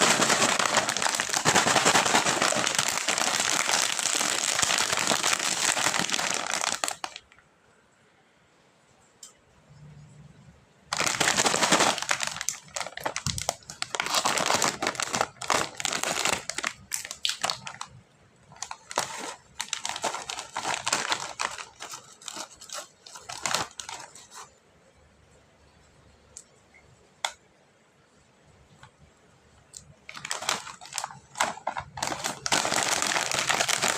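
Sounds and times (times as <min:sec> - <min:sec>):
snack wrapper crinkling: 0:00.0 - 0:07.4, 0:10.9 - 0:24.5, 0:29.7 - 0:33.9.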